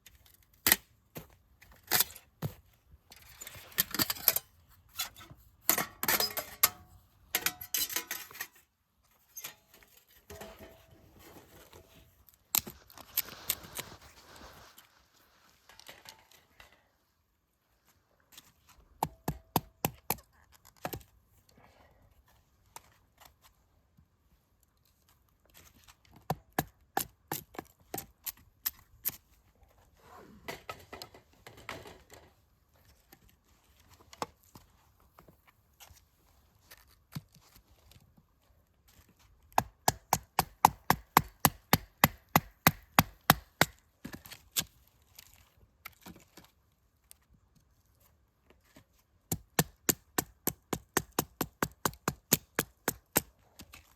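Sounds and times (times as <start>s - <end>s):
axe chopping wood: 39.6s - 43.8s, 49.3s - 53.3s.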